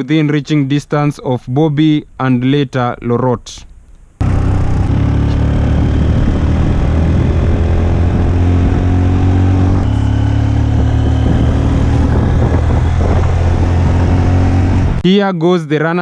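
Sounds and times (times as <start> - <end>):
vehicle engine running: 4.2 - 15.0.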